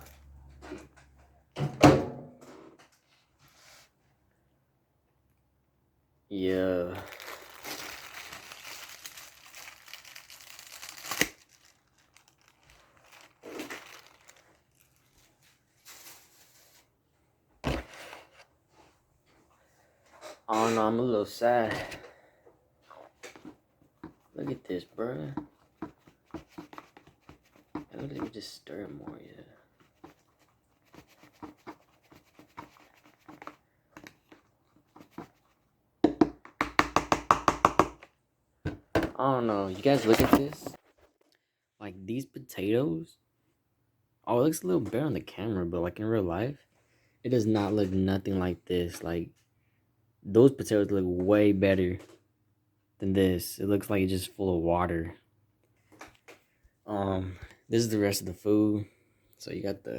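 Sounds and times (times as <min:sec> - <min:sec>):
quiet plastic rustles: 0:06.8 - 0:21.1, 0:22.8 - 0:35.7, 0:39.4 - 0:41.3
plastic film crinkling and tearing: 0:06.9 - 0:16.1
sharp snap of plastic film: 0:11.0 - 0:11.5.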